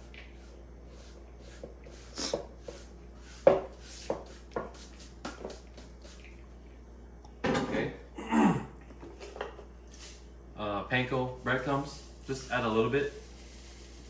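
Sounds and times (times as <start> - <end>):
onions scraped into a bowl: 0.4 - 6.2, 11.8 - 14.0.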